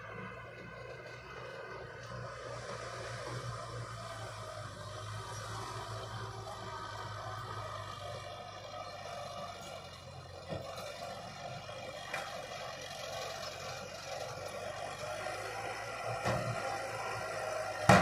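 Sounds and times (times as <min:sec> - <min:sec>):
heavy machinery diesel engine: 0:00.0 - 0:18.0.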